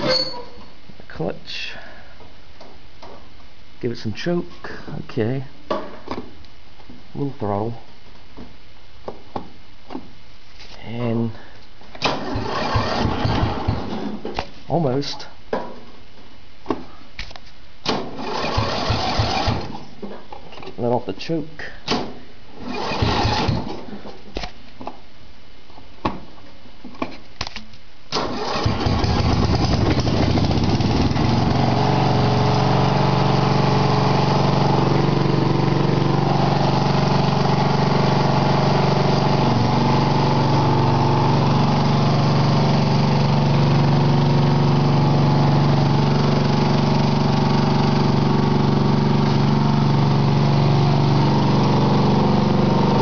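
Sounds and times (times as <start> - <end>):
lawn tractor engine starting and running: 12.0 - 14.3, 17.9 - 19.9, 21.9 - 23.9, 28.1 - 53.0.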